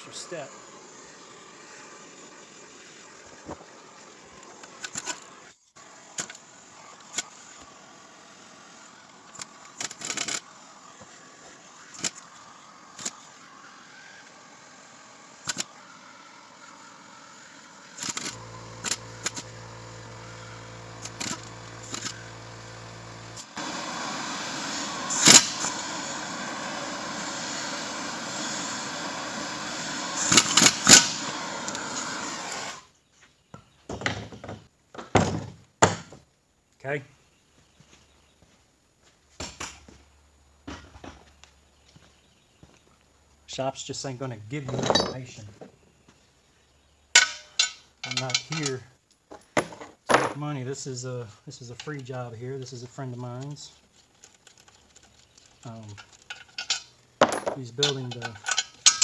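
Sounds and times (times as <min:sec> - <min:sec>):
power tool whirring: 0:00.0 - 0:32.9
hand tools clicking on metal: 0:18.0 - 0:23.6, 0:47.2 - 0:48.8, 0:53.4 - 0:59.0.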